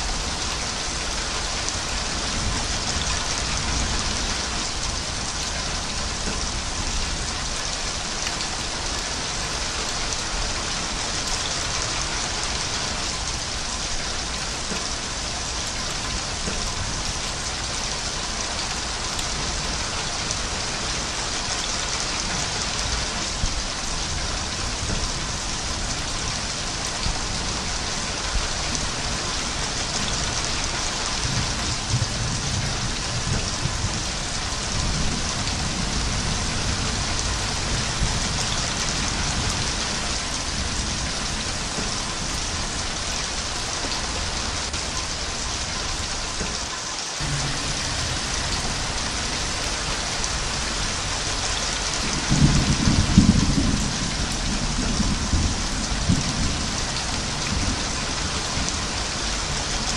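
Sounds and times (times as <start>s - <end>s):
steady rain falling: 0.0s - 59.9s
low rumbling: 47.2s - 57.7s.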